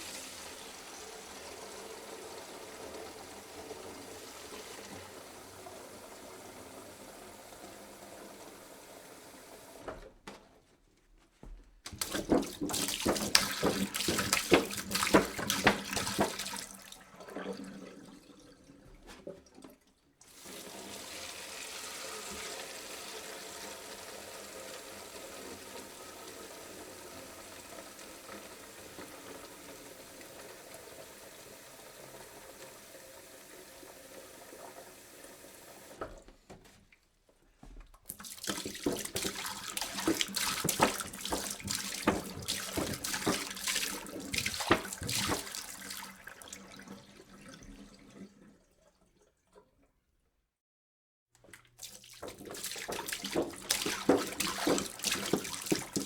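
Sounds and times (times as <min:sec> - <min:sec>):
water pouring into a jug: 0:00.0 - 0:09.7, 0:11.9 - 0:36.2, 0:38.1 - 0:49.8, 0:51.5 - 0:56.0
choppy water splashing: 0:11.9 - 0:16.9, 0:38.1 - 0:46.4, 0:51.7 - 0:56.0.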